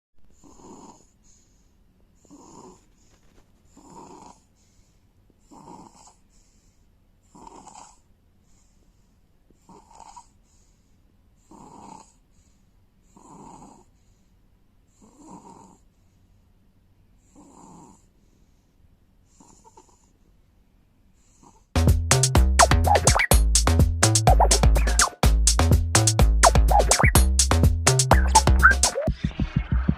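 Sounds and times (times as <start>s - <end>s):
faint snoring: 0.2s - 1.6s, 2.2s - 3.0s, 3.7s - 4.6s, 5.4s - 6.5s, 7.2s - 8.7s, 9.5s - 10.7s, 11.4s - 14.2s, 14.9s - 16.1s, 17.2s - 18.6s, 19.2s - 20.2s.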